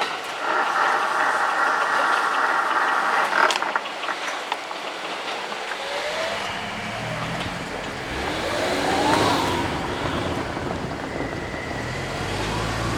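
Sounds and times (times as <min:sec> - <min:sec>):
car engines running: 0:00.0 - 0:12.9
car revving and passing: 0:05.6 - 0:12.9.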